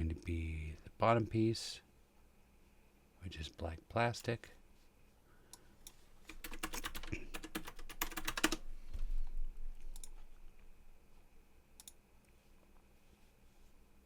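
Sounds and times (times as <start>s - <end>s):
computer keyboard typing: 6.3s - 8.6s.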